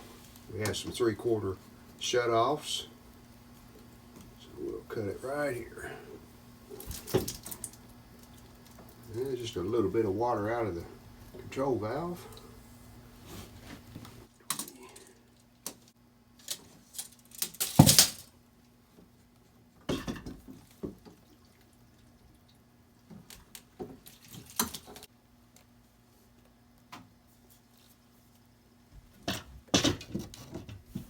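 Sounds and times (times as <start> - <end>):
water dripping and splashing: 21.0 - 25.1.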